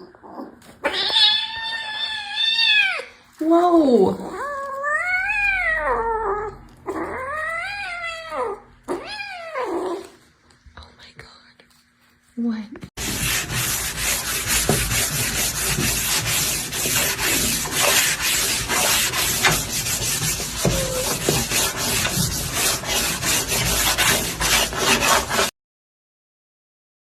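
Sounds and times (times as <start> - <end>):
scratching and rubbing on microphone: 13.0 - 25.5.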